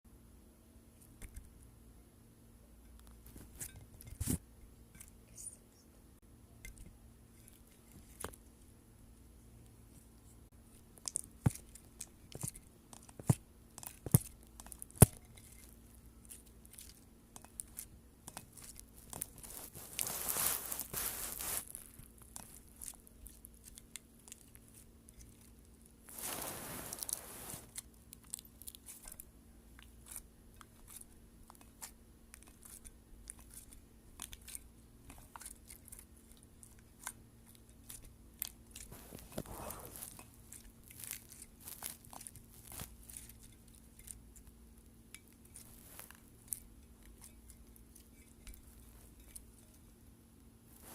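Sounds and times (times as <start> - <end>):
slime squeezed by hand: 19.2 - 21.9.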